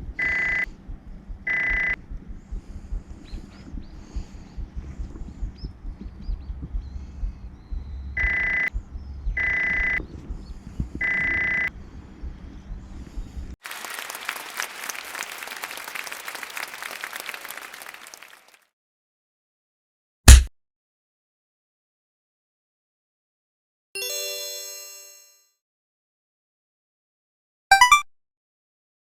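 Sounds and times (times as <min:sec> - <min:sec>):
wind on microphone: 0:00.0 - 0:13.6
hissing crackling patter: 0:13.6 - 0:18.4
short high-pitched beeps: 0:27.7 - 0:28.1.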